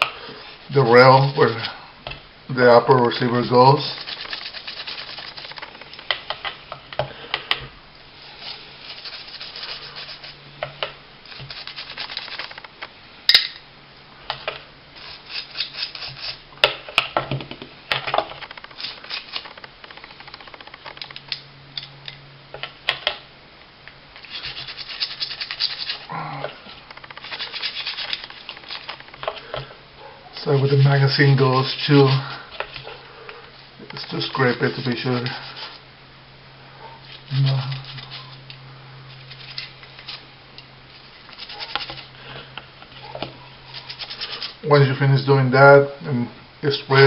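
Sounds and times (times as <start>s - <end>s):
brush scrubbing metal: 3.2s - 5.6s, 8.2s - 10.4s, 11.3s - 12.6s, 15.0s - 16.5s, 24.2s - 26.1s, 27.2s - 29.0s, 30.4s - 32.9s, 34.0s - 35.8s, 37.2s - 38.5s, 39.2s - 40.3s, 43.6s - 44.6s.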